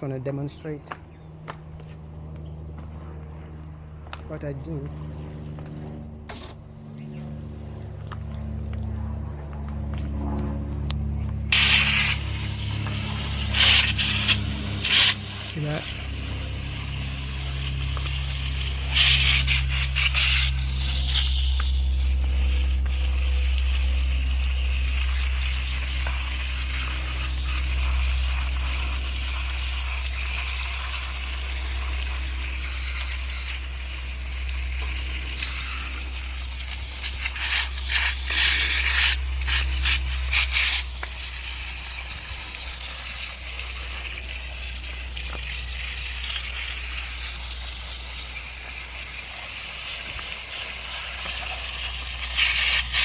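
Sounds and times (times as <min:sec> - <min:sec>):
steady low hum: 0:00.0 - 0:53.0
spray cleaner hissing bursts: 0:11.5 - 0:53.0.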